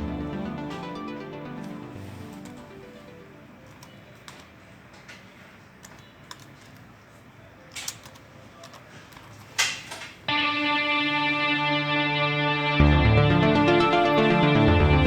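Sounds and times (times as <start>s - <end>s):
laptop keys clicking: 1.6s - 2.8s, 3.6s - 9.9s.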